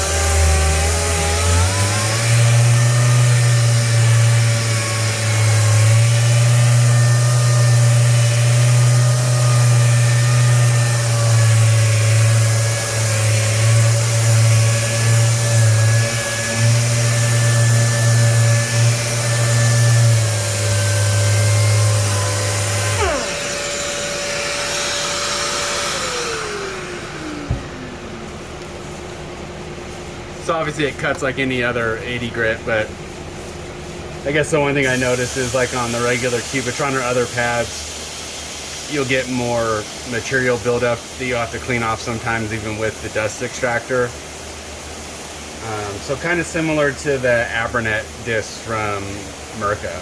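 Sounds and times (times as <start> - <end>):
orbital sander humming: 0.0 - 29.0
dust extractor whine: 0.0 - 50.0.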